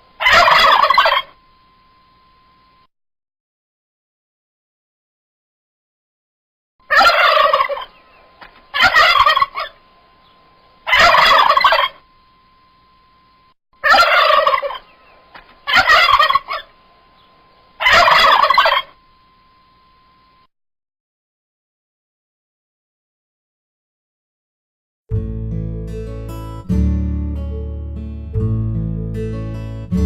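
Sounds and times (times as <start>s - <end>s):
faint steady tone: 0.0s - 2.9s, 9.0s - 15.3s, 16.2s - 20.5s
turkey gobbling: 0.2s - 1.4s, 6.8s - 9.8s, 10.8s - 12.0s, 13.8s - 16.7s, 17.8s - 19.0s.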